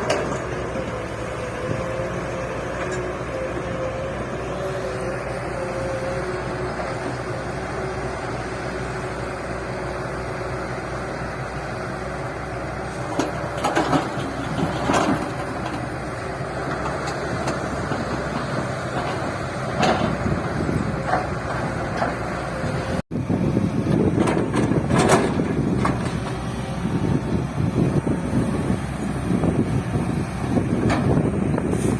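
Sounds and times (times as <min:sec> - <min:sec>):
excavator diesel engine running: 0:00.0 - 0:31.9
metal clanks and knocks: 0:13.1 - 0:15.8, 0:16.7 - 0:20.4, 0:24.2 - 0:26.4.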